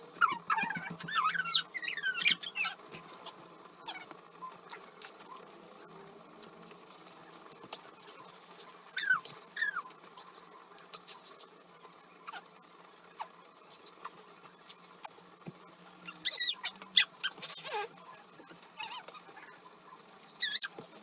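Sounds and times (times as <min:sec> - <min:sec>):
baby squeaking and squealing: 0:00.3 - 0:02.8, 0:16.1 - 0:17.9, 0:20.4 - 0:20.8.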